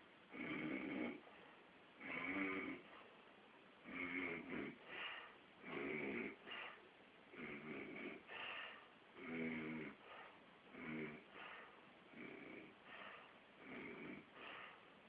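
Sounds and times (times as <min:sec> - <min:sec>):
person snoring: 0:00.3 - 0:01.2, 0:02.0 - 0:03.0, 0:03.8 - 0:05.0, 0:05.6 - 0:08.5, 0:09.2 - 0:10.1, 0:10.7 - 0:11.4, 0:12.1 - 0:12.8, 0:13.6 - 0:14.7.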